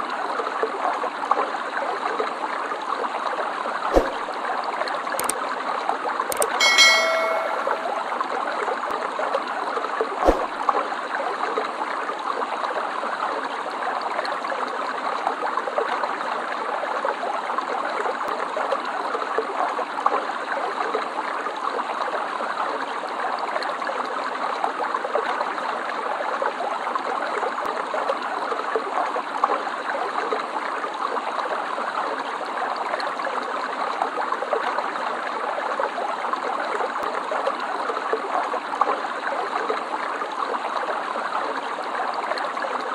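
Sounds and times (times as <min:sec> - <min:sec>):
stream water flowing: 0:02.0 - 0:05.7, 0:06.3 - 0:08.1, 0:10.2 - 0:17.8.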